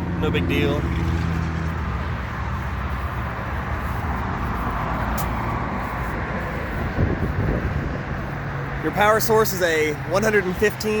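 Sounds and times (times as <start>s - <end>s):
low vehicle rumble: 0.0s - 11.0s.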